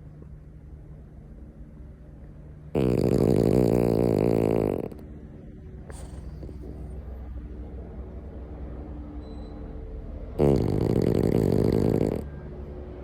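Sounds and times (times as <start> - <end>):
dog snoring loudly: 2.7 - 5.0, 5.9 - 7.2, 10.4 - 12.3.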